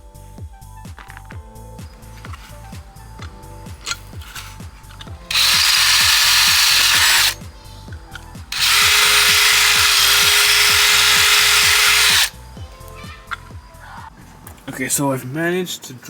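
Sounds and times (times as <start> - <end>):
power drill boring through steel: 5.3 - 7.4, 8.5 - 12.4.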